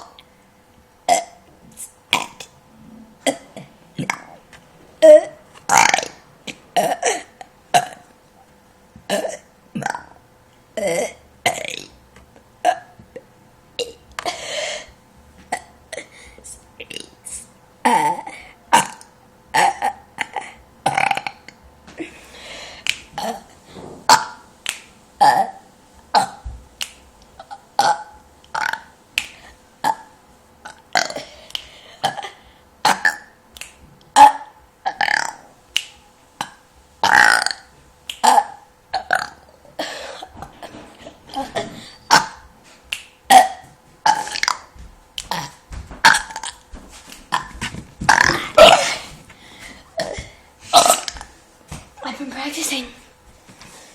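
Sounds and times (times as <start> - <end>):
person burping: 1.1 - 1.5, 2.1 - 2.6, 3.2 - 4.4, 5.0 - 8.1, 9.1 - 10.2, 10.8 - 12.0, 12.6 - 14.4, 15.5 - 16.1, 17.8 - 22.1, 23.2 - 23.5, 25.2 - 26.4, 27.4 - 28.9, 29.8 - 31.4, 32.0 - 33.3, 34.2 - 35.5, 36.4 - 42.4, 43.3 - 44.6, 45.3 - 46.6, 47.3 - 49.2, 50.0 - 51.2.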